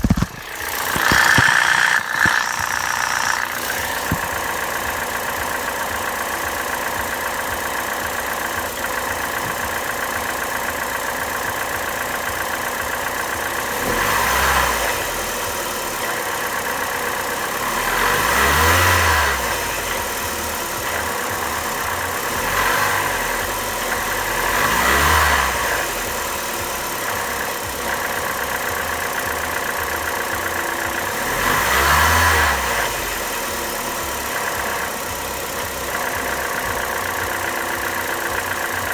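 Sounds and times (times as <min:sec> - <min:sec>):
drive belt rattle: 0:00.0 - 0:13.7, 0:33.6 - 0:38.9
car engine idling and revving: 0:00.0 - 0:38.9.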